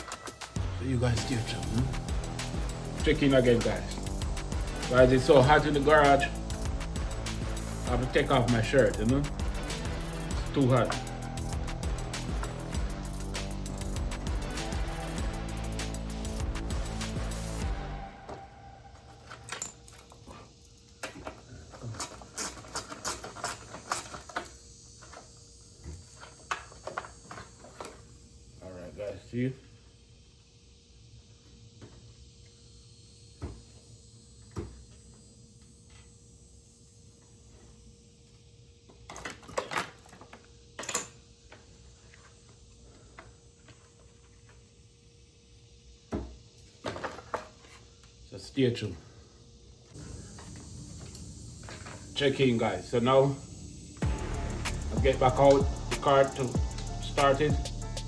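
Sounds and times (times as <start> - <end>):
background music: 0.0 - 19.5, 54.0 - 58.0
faint steady hum: 0.0 - 58.0
metal tools clinking: 19.1 - 25.2.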